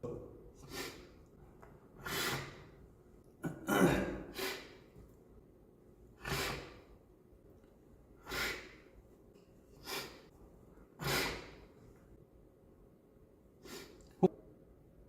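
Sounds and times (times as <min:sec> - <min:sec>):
man sniffling: 0:03.9 - 0:05.0, 0:06.2 - 0:06.9, 0:08.2 - 0:08.9, 0:09.8 - 0:10.3, 0:11.0 - 0:11.7, 0:13.6 - 0:14.3.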